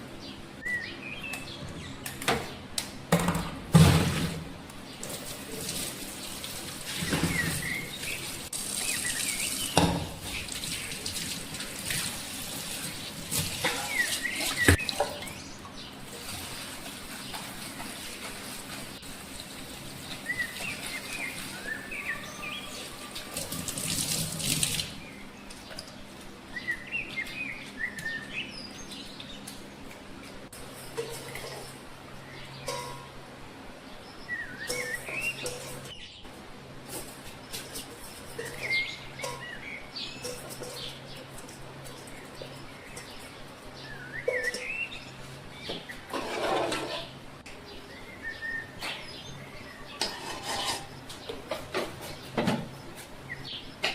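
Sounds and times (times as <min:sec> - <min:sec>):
small birds chirping: 0:04.8 - 0:19.0, 0:19.6 - 0:36.4, 0:37.2 - 0:46.1, 0:50.8 - 0:53.9
water running from a tap: 0:05.1 - 0:15.0, 0:23.1 - 0:25.0.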